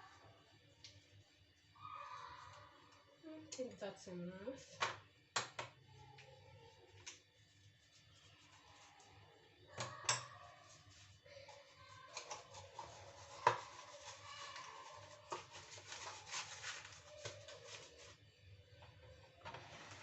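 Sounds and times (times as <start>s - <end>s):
spoon stirring in a mug: 6.9s - 17.8s.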